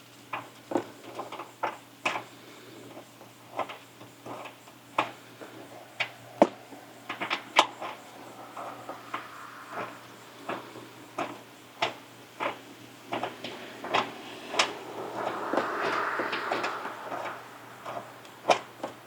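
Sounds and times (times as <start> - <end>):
faint steady hum: 4.0 - 19.0.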